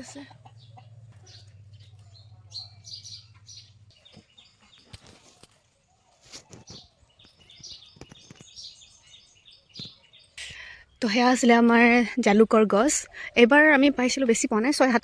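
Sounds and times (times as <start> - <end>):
faint birds chirping: 0.0 - 15.0.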